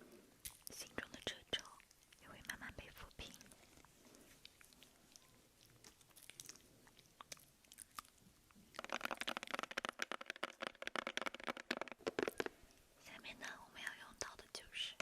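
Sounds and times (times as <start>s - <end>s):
wet mouth clicks and smacking: 0.4s - 0.8s, 3.2s - 12.8s.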